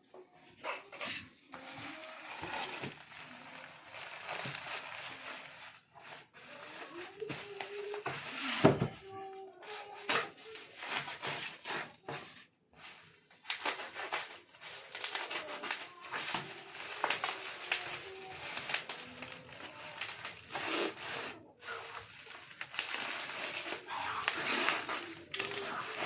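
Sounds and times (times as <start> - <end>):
packaging rustling and crinkling: 0.4 - 26.0.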